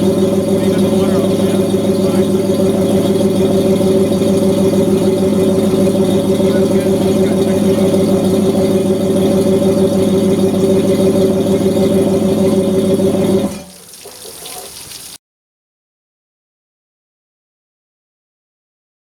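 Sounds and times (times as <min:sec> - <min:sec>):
outboard motor idling: 0:00.0 - 0:15.2
faint running water hiss: 0:13.5 - 0:15.2.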